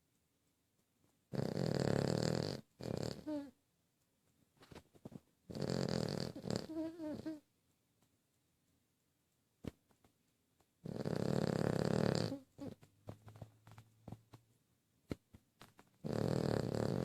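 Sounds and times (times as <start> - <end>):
faint clicks and snuffles: 0.8 - 3.6, 4.3 - 8.8, 9.6 - 17.0
pet snoring: 1.3 - 3.5, 5.5 - 7.4, 10.8 - 12.8, 16.0 - 17.0.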